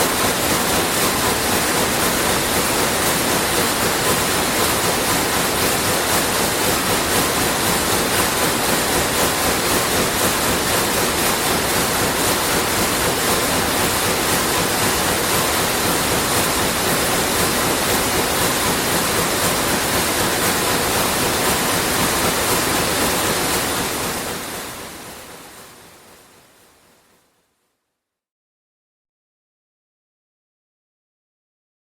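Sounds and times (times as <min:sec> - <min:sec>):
weaving looms clattering: 0:00.0 - 0:25.0.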